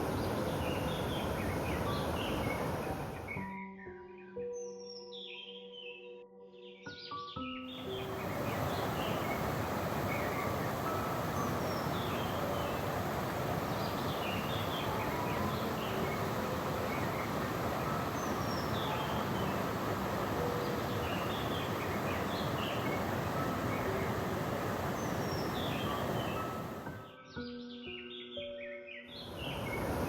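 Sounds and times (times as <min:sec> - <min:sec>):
rushing stream: 0:00.0 - 0:03.4, 0:07.8 - 0:27.0, 0:29.2 - 0:30.0
small birds chirping: 0:00.0 - 0:03.4, 0:07.7 - 0:27.0, 0:29.0 - 0:30.0.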